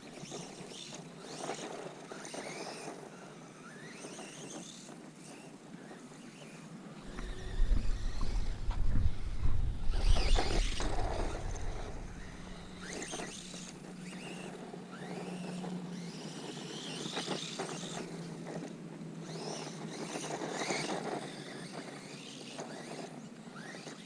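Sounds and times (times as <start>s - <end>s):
wind rumbling on microphone: 7.0s - 13.9s
electric motor whining: 7.0s - 24.0s.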